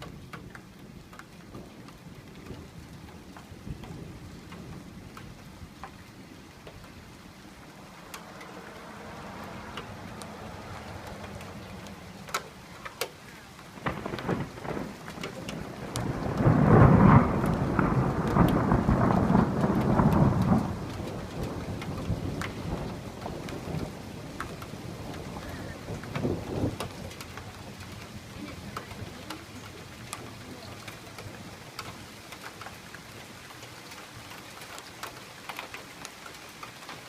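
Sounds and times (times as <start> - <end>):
raindrops ticking close by: 0.0 - 37.0
steady rain: 0.0 - 37.0
thunder rolling: 13.6 - 31.7.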